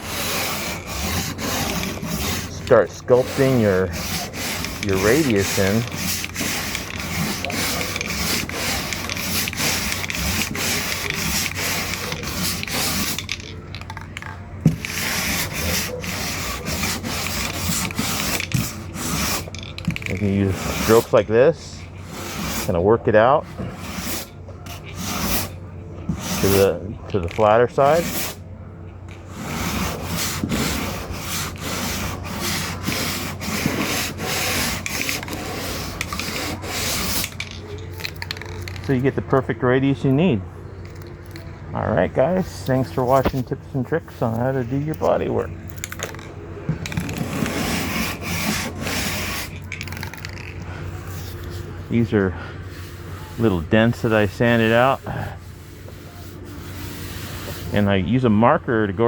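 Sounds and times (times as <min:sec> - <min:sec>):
hand sanding strokes: 0:00.0 - 0:13.5, 0:14.7 - 0:22.8, 0:23.4 - 0:26.8, 0:27.7 - 0:28.4, 0:29.3 - 0:37.5, 0:47.2 - 0:50.1, 0:50.9 - 0:58.0.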